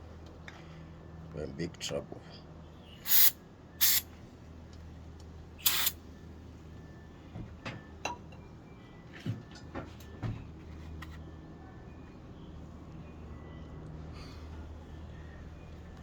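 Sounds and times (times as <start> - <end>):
short hiss: 3.0 - 4.0, 5.6 - 6.0.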